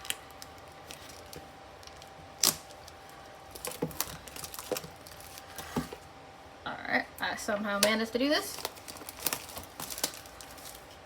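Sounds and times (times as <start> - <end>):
card pack packaging clicking: 0.0 - 5.9, 8.5 - 10.9.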